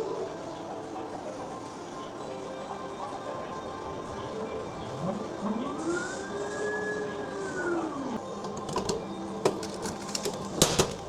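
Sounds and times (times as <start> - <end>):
sharp clicks and knocks: 8.4 - 11.0.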